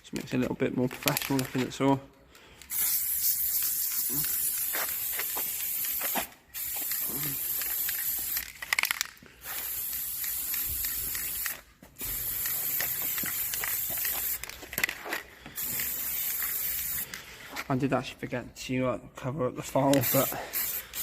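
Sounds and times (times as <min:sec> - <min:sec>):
spray paint can hissing: 0:02.7 - 0:17.2, 0:19.9 - 0:21.0.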